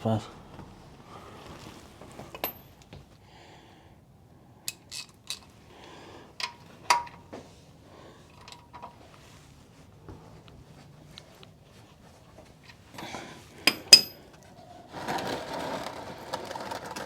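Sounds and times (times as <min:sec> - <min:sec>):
metal tools clinking: 0:02.3 - 0:02.8, 0:13.6 - 0:14.3.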